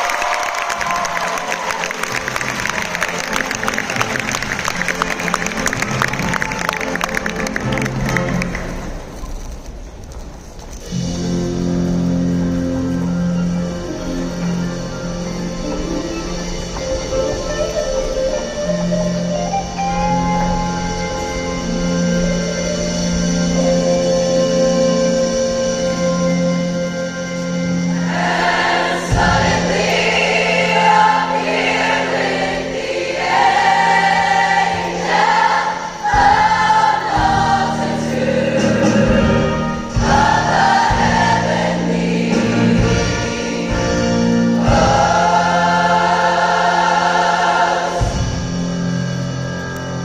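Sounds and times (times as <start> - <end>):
instrumental accompaniment: 0.3 - 9.6, 10.7 - 50.0
choir singing: 12.8 - 49.5.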